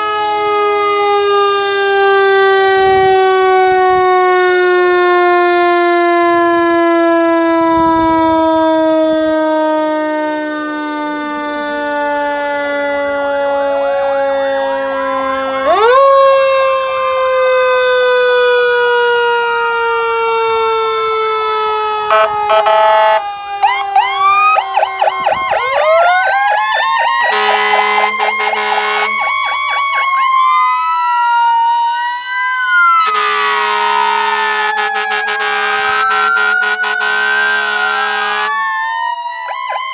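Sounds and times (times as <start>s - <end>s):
sirens wailing and yelping: 0.0s - 39.9s
air horn blasts: 22.1s - 23.2s, 27.2s - 30.2s, 33.0s - 38.6s.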